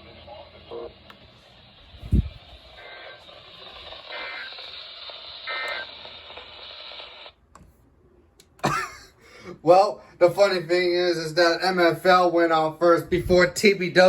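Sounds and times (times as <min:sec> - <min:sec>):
radio static hiss: 0:00.0 - 0:07.4
warbling data bursts: 0:01.8 - 0:07.3.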